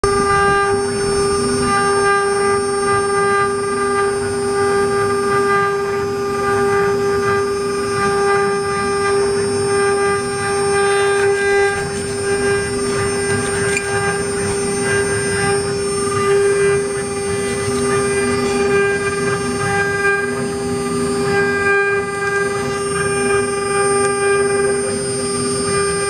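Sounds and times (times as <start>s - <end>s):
cnc router spindle whine: 0.0s - 26.0s
rough machining noise: 0.0s - 26.0s.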